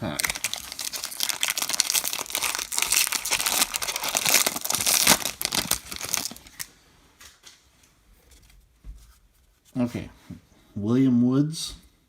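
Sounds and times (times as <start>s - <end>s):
wrapper crinkling and tearing: 0.0s - 6.7s.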